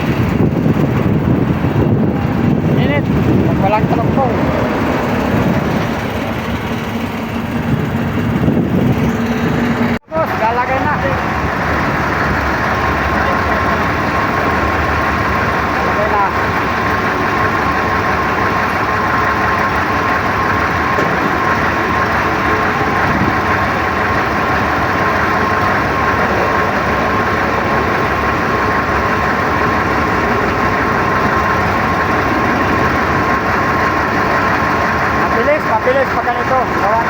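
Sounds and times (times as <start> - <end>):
engine idling: 0.0 - 37.0.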